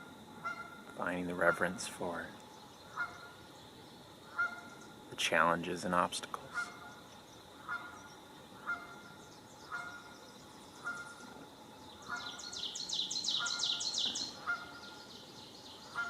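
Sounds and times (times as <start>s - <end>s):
nasal honk-like bird call: 0.4s - 0.8s, 2.9s - 3.4s, 4.3s - 4.8s, 6.5s - 7.0s, 7.6s - 10.1s, 10.8s - 11.4s, 12.0s - 12.7s, 13.3s - 15.0s
high fast bird trill: 12.0s - 15.1s.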